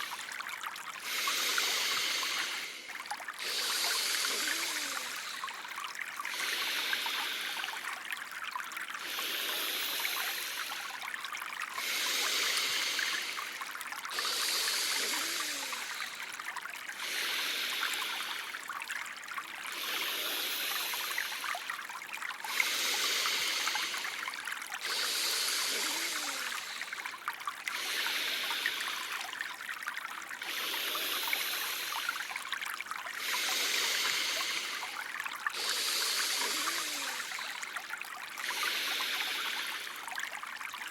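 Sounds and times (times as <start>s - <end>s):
trickling water: 0.0s - 40.9s
person breathing: 1.0s - 5.6s, 6.3s - 7.8s, 9.0s - 11.0s, 11.8s - 16.4s, 17.0s - 18.6s, 19.8s - 21.7s, 22.5s - 29.3s, 30.4s - 32.3s, 33.2s - 37.8s, 38.4s - 40.0s.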